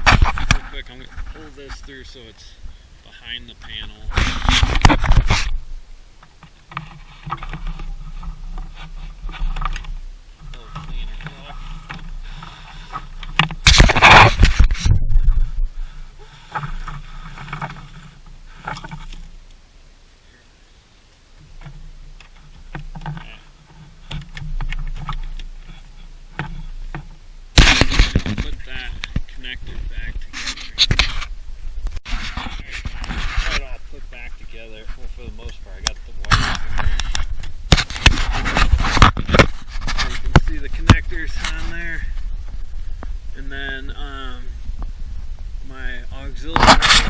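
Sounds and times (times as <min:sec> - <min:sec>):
steady low hum: 0:00.0 - 0:47.0
cable scraping behind plastic panel: 0:03.3 - 0:05.6, 0:06.2 - 0:19.4, 0:21.4 - 0:43.1, 0:46.3 - 0:47.0
clicks knocks and rustles of wiring: 0:06.2 - 0:15.0, 0:16.4 - 0:19.6, 0:21.4 - 0:33.6, 0:35.4 - 0:43.1.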